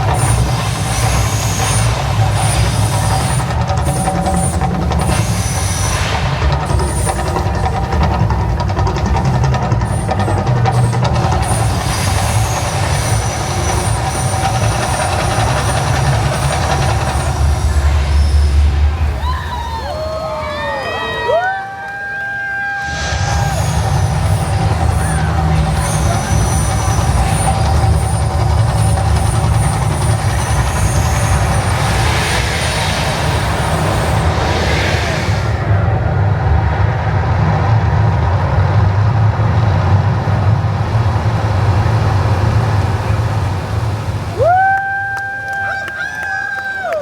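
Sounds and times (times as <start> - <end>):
loud low rumble: 0.0 - 20.9, 21.6 - 44.7
hissing rush of fire: 0.0 - 47.0
thin high whistling tones: 10.8 - 35.6.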